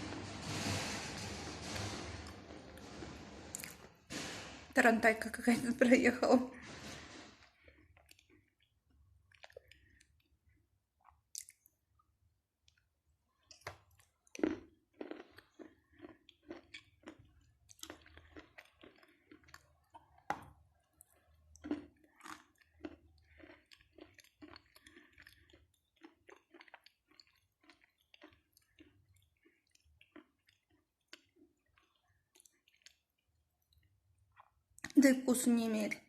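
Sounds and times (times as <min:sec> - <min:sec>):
chewing with crisp crunches: 0:07.4 - 0:35.0.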